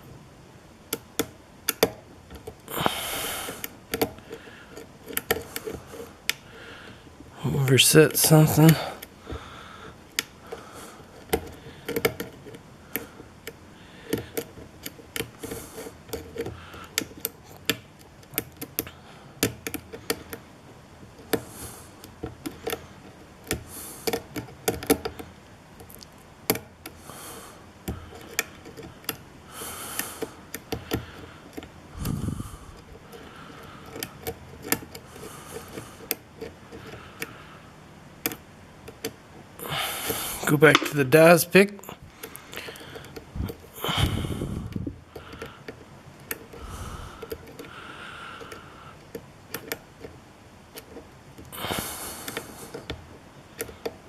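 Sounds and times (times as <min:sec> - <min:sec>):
lock pick clicking and scraping: 0:00.9 - 0:06.5, 0:10.0 - 0:20.5, 0:21.1 - 0:27.0, 0:27.8 - 0:37.4, 0:38.2 - 0:39.2, 0:42.2 - 0:47.8, 0:48.4 - 0:51.5, 0:52.2 - 0:54.0.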